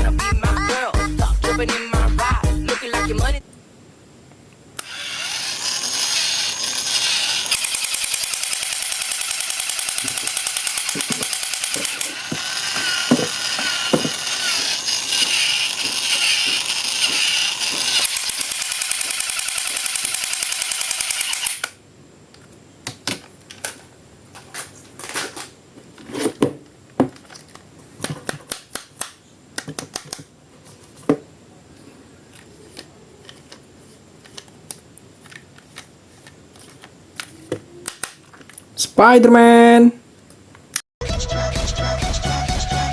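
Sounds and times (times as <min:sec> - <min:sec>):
loud mechanical buzz with rattle: 0:04.8 - 0:21.8
plastic toy parts clicking: 0:04.8 - 0:21.8, 0:28.3 - 0:30.3, 0:34.2 - 0:38.6.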